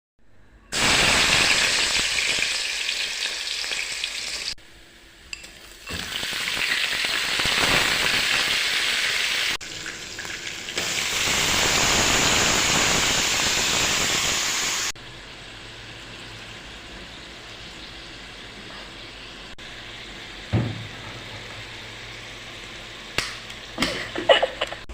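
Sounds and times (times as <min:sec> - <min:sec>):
food sizzling in hot oil: 0:00.7 - 0:04.6, 0:05.4 - 0:18.4.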